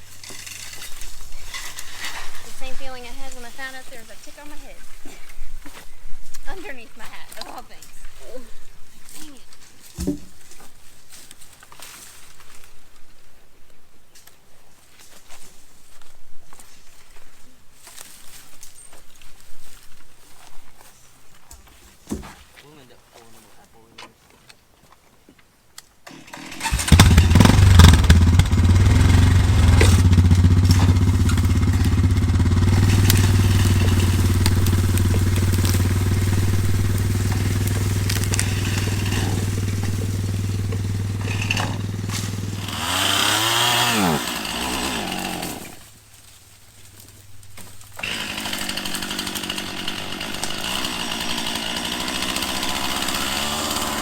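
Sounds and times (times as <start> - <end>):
chainsaw running: 0.0 - 5.4, 26.1 - 54.0.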